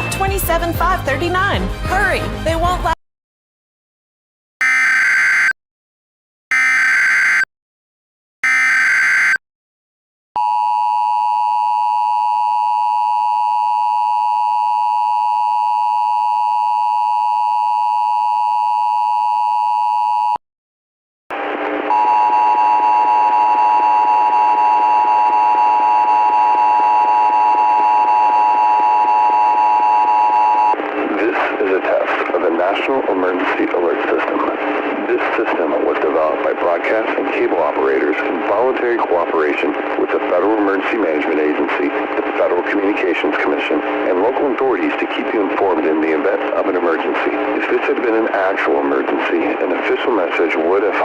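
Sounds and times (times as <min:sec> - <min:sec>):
data burst tones: 0:04.6 - 0:05.6, 0:06.5 - 0:07.5, 0:08.4 - 0:09.4
two-tone attention signal: 0:04.6 - 0:05.6, 0:06.5 - 0:07.5, 0:08.4 - 0:09.4.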